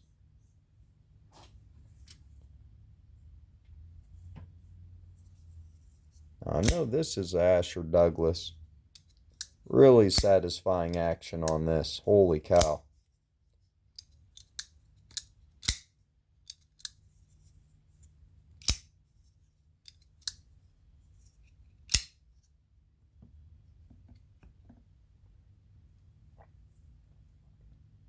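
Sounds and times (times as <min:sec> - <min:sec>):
folding knife clicking open and shut: 0:06.6 - 0:06.8, 0:12.6 - 0:12.8, 0:14.0 - 0:15.9, 0:18.6 - 0:18.9, 0:21.9 - 0:22.2.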